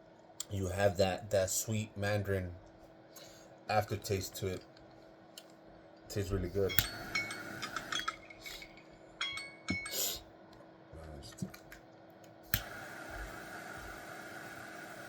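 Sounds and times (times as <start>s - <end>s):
glass pieces clinking: 6.7s - 10.2s
steady hiss: 12.5s - 15.0s.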